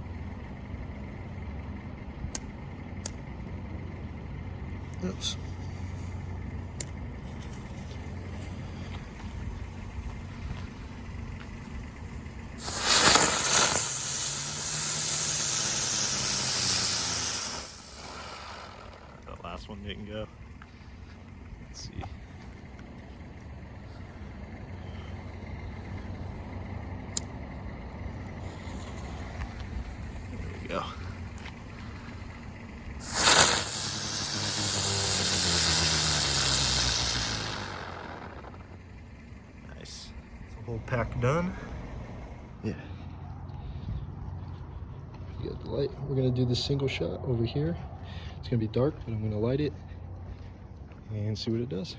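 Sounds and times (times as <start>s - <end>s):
spinning fireworks hissing: 0.0s - 1.3s, 6.7s - 21.6s, 27.1s - 39.6s.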